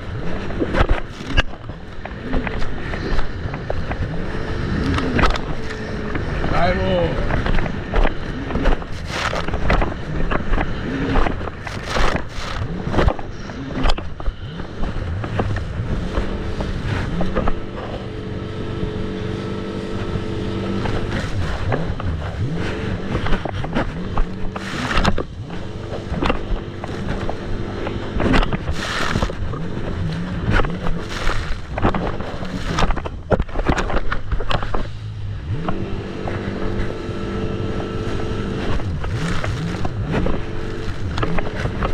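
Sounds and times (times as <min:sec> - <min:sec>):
jet ski engine droning: 0:00.0 - 0:41.9
sharp thumps: 0:00.6 - 0:17.8.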